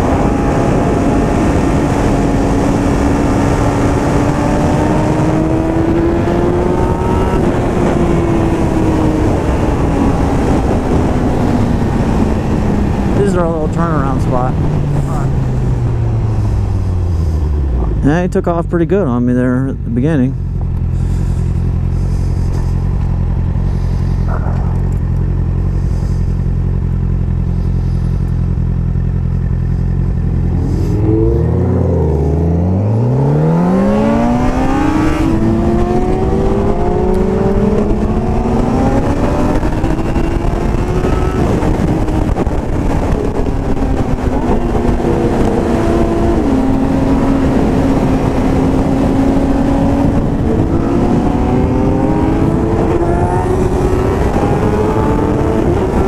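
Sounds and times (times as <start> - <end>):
wind noise: 0.0 - 18.1, 29.5 - 56.0
motorcycle engine idling and revving: 0.0 - 56.0.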